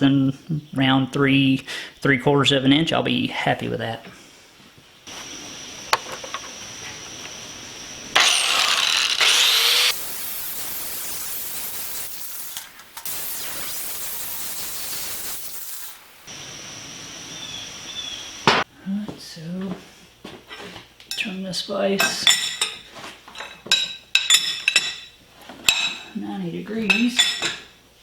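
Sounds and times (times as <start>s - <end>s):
angle grinder grinding steel: 8.2s - 16.3s.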